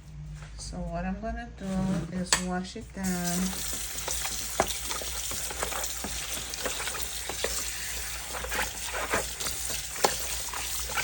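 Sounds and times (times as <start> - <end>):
hands washing fish in water: 3.0 - 11.0
wet splashing and squelching: 3.1 - 11.0.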